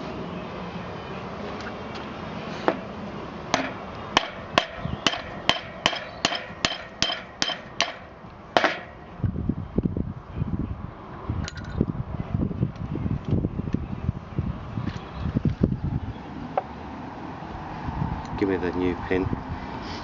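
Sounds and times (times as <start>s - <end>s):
hammer tapping metal pin: 3.6s - 8.0s.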